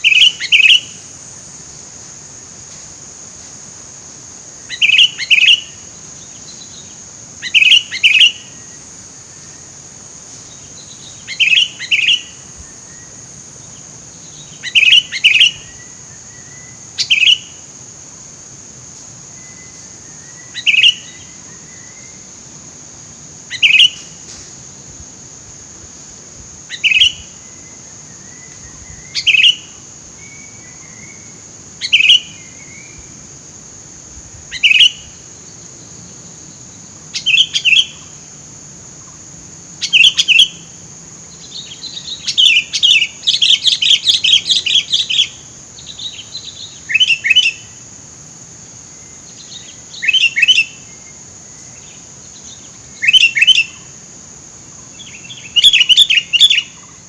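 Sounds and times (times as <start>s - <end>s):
steady high-pitched hiss: 0.0s - 57.0s
bulbul calling: 14.3s - 17.6s, 23.5s - 24.2s, 28.2s - 33.0s, 53.0s - 53.9s, 55.0s - 57.0s.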